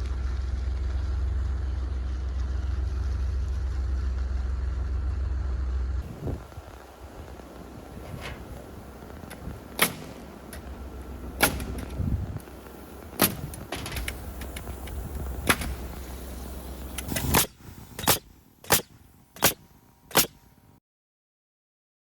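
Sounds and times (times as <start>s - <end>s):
low rumble: 0.0s - 20.0s
nailing strikes into wood: 11.4s - 11.9s.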